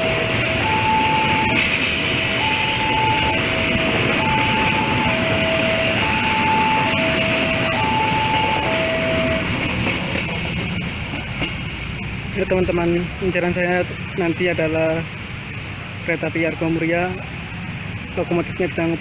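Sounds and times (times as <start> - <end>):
level crossing warning tones: 0.0 - 11.1.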